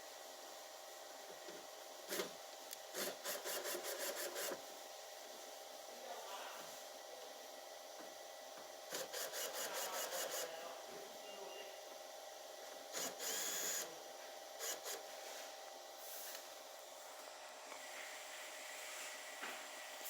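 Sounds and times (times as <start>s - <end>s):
tool whirring: 2.9s - 4.6s, 8.9s - 10.5s, 12.9s - 13.9s, 14.6s - 15.2s.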